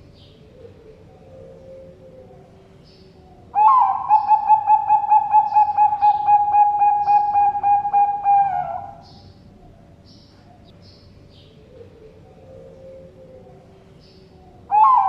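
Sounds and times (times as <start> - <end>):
small birds chirping: 0.0 - 8.0, 8.6 - 15.0
dove rapid cooing: 0.3 - 2.7, 3.3 - 9.0, 11.6 - 15.0.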